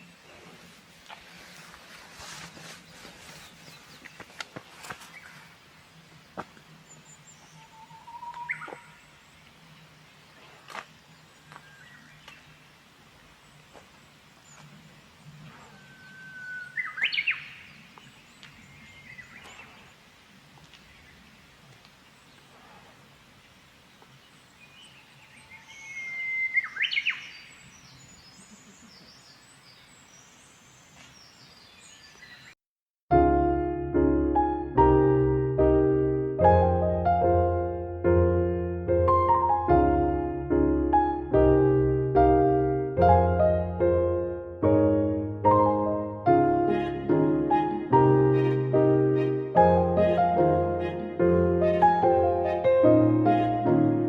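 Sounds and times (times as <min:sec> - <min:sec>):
bush warbler singing: 0:01.4 - 0:04.4, 0:05.1 - 0:12.8, 0:13.4 - 0:20.0, 0:23.8 - 0:32.6
bird whistling song: 0:07.2 - 0:09.0, 0:15.5 - 0:17.8, 0:24.6 - 0:30.4
thin high bird calls: 0:07.2 - 0:09.5, 0:14.5 - 0:20.0, 0:24.5 - 0:32.6.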